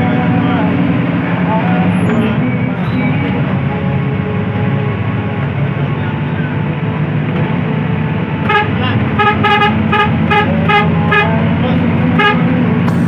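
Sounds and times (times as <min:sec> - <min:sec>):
bus engine drone: 0:00.0 - 0:13.0
road noise: 0:00.0 - 0:13.0
bus horn blowing: 0:08.4 - 0:12.6.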